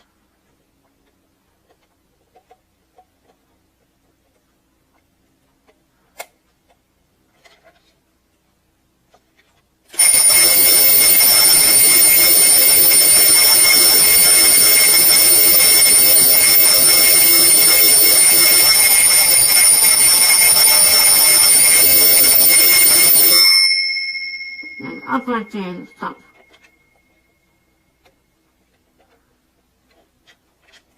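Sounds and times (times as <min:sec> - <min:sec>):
alarm clock ringing: 0:10.0 - 0:27.2.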